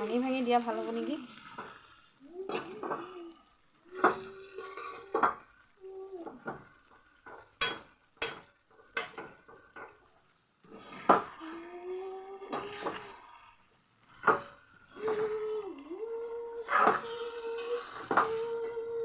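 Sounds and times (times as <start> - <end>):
spatula scraping metal pan: 10.6 - 11.4, 12.4 - 15.6, 16.6 - 18.4.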